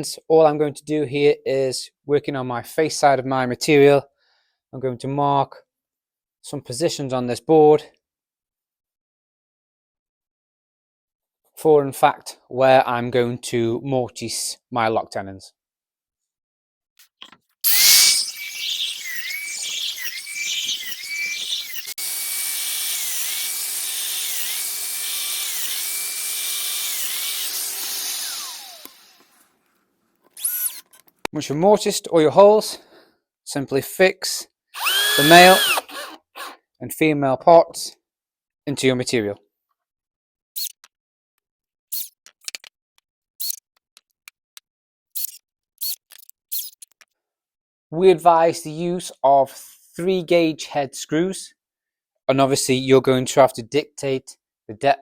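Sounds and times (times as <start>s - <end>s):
cordless screwdriver driving screws: 17.7s - 22.2s, 24.0s - 29.3s, 30.4s - 31.0s, 34.8s - 36.6s, 40.6s - 40.9s, 45.2s - 47.1s
joiner motor whine: 17.7s - 27.4s, 28.0s - 29.2s.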